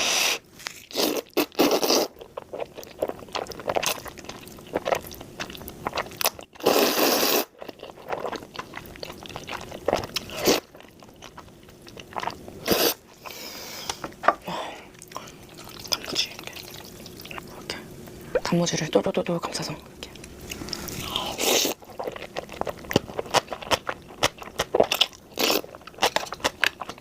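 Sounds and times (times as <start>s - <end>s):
crunchy chewing: 0.5s - 14.3s, 20.0s - 27.0s.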